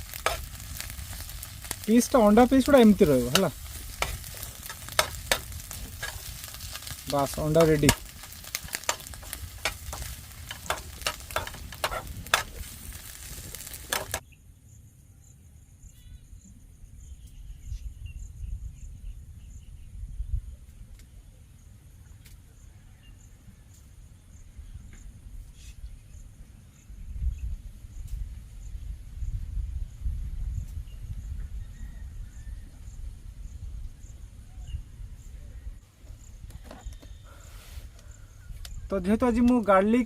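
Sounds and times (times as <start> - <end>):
egg sizzling in a pan: 0.0 - 14.2
spatula scraping pan: 2.8 - 14.2.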